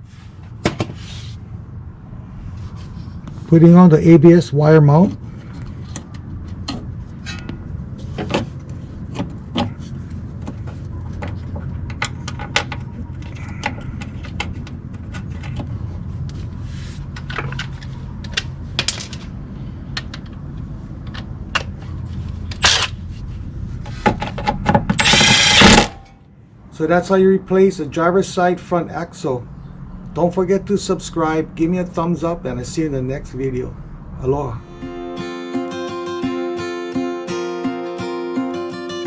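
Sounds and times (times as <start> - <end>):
loud whirring burst: 25.0 - 26.1
low hum: 32.5 - 35.5.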